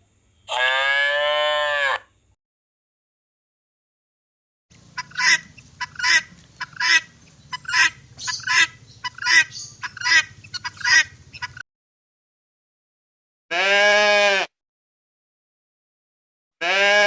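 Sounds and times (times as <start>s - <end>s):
fowl two-part calls: 4.9s - 11.6s.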